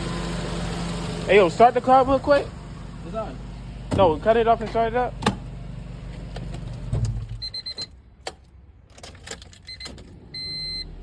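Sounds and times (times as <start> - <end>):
car engine idling: 0.0 - 7.4.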